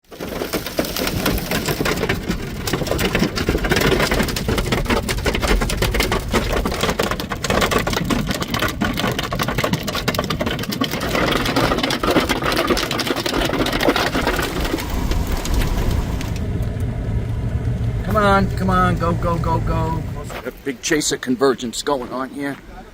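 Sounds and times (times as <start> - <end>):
hail and rain pelting a vehicle: 0.0 - 20.8
steady low rumble: 14.0 - 20.8.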